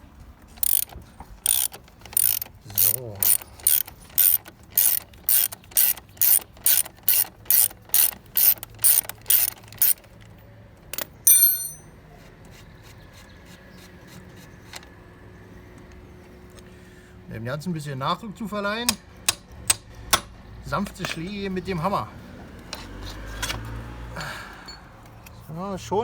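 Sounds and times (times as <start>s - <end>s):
ratchet clicking: 0.6s - 10.2s, 10.9s - 11.8s
metallic clank with ringing: 11.0s - 12.0s.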